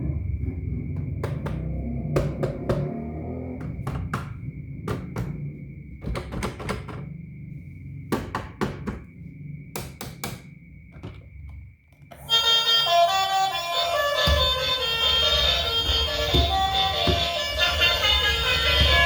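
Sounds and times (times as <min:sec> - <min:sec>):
hard clicks and knocks: 0:01.0 - 0:03.0, 0:03.6 - 0:07.1, 0:08.1 - 0:09.1, 0:14.2 - 0:19.0
music: 0:12.1 - 0:19.0.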